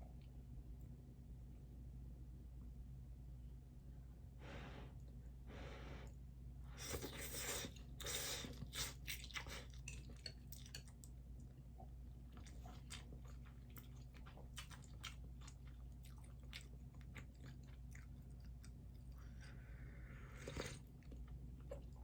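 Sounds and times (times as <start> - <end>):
person chewing noodles: 6.8 - 22.0.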